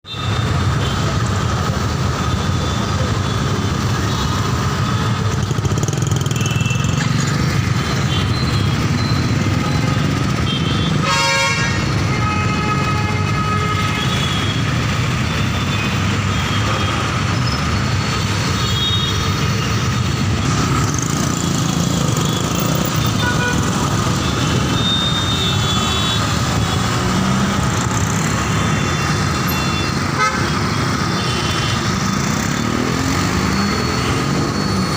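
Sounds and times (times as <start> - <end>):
traffic rumble: 0.1 - 34.9
car horns honking: 10.4 - 14.7, 23.1 - 26.4, 28.5 - 31.8
vehicle accelerating: 32.0 - 34.9.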